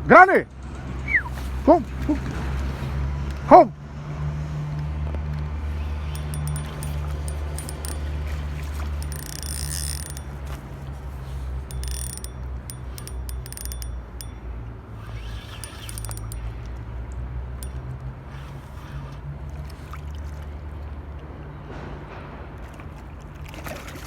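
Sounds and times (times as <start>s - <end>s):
fishing reel clicking and ratcheting: 5.6s - 16.8s.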